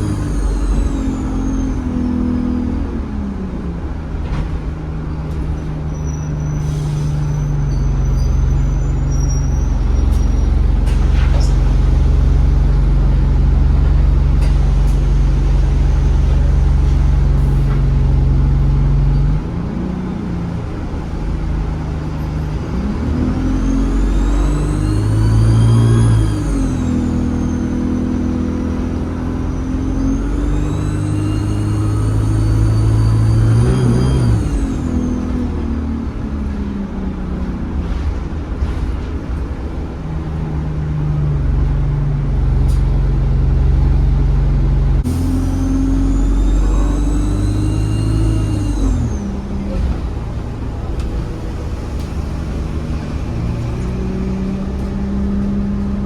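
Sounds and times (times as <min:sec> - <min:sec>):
turbocharger whistling whine: 0:00.0 - 0:02.6, 0:22.4 - 0:36.5, 0:45.0 - 0:55.9
bus engine pulling under load: 0:00.0 - 0:56.0.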